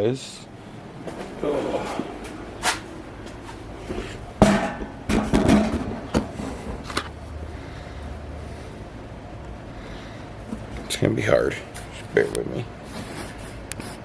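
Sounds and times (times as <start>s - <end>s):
low steady hum: 0.0s - 14.0s
parts and tools clattering: 4.4s - 7.2s.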